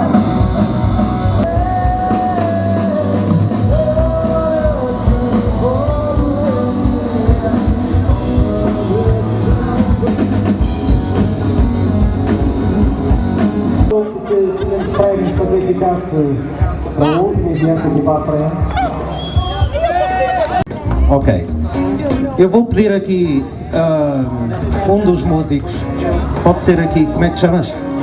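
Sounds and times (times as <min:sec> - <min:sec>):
person singing: 0:00.0 - 0:11.2
electric guitar: 0:00.0 - 0:13.9
drum kit: 0:00.0 - 0:14.0, 0:18.6 - 0:22.9.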